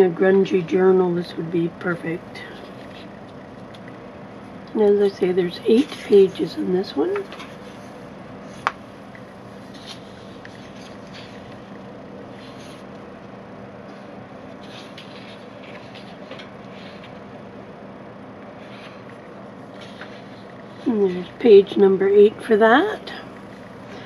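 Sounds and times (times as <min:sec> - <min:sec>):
low room hum: 0:00.0 - 0:24.0
paper rustling: 0:07.2 - 0:08.8, 0:09.5 - 0:13.0, 0:13.9 - 0:17.3, 0:18.6 - 0:20.9.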